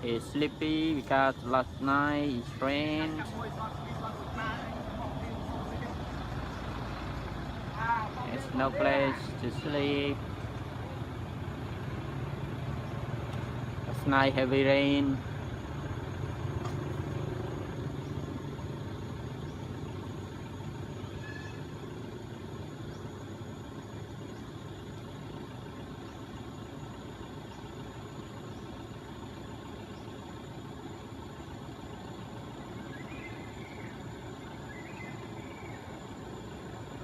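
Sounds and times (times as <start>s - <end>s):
engine hum: 0.0s - 37.0s
faint squeal: 21.0s - 21.8s.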